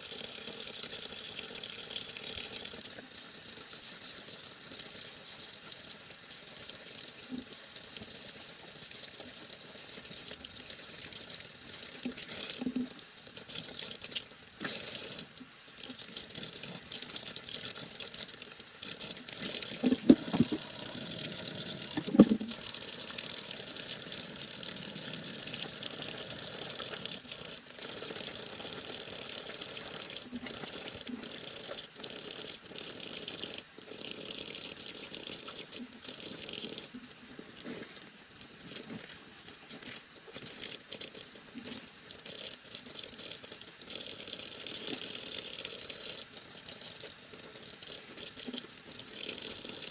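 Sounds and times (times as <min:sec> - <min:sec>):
tap water running into sink: 0:00.1 - 0:37.6.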